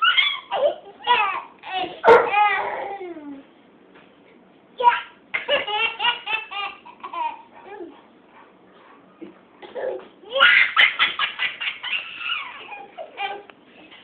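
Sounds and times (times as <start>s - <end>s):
young child laughing: 4.8s - 8.0s, 9.6s - 14.0s.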